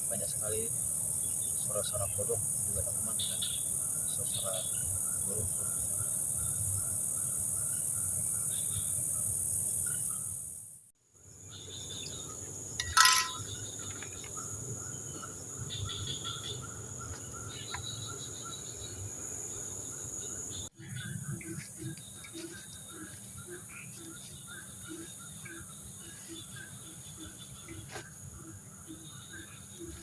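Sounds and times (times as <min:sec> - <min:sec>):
frogs calling: 0:00.0 - 0:10.6, 0:11.4 - 0:30.0
birds calling: 0:11.5 - 0:30.0.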